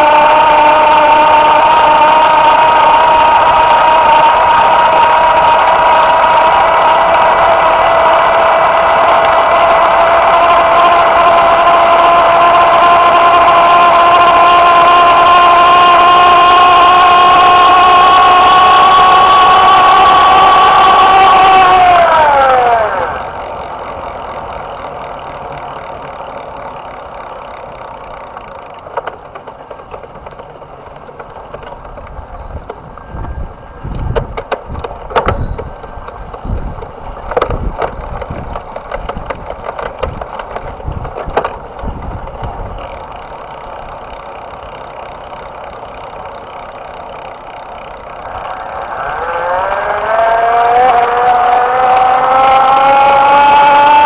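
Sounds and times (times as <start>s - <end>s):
electric bike motor whine: 0.0s - 54.0s
irregular knocks and clicks: 33.9s - 42.4s.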